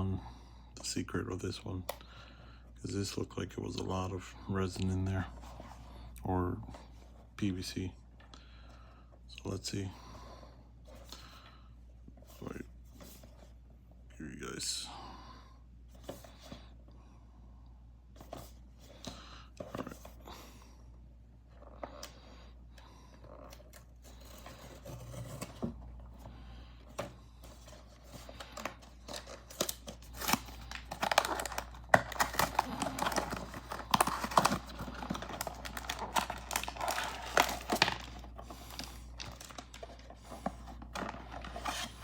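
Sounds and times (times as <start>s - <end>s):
packaging crinkling and tearing: 27.5s - 42.0s.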